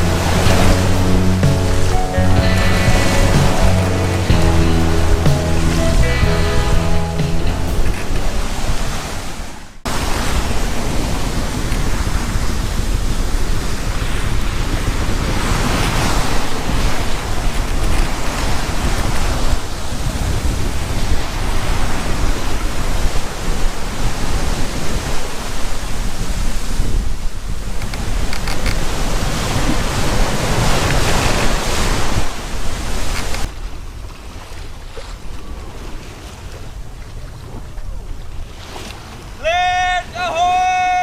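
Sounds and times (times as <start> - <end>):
music: 0.0 - 8.1
strong wind: 0.0 - 34.7
rushing waves: 0.0 - 41.0
wind buffeting microphone: 7.8 - 39.4.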